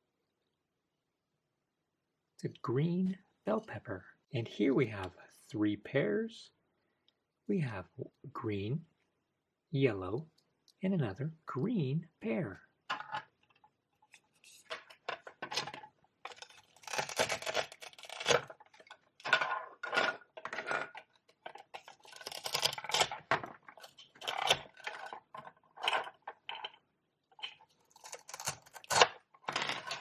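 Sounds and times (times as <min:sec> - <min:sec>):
velcro tearing: 0:16.3 - 0:18.5, 0:21.9 - 0:23.0.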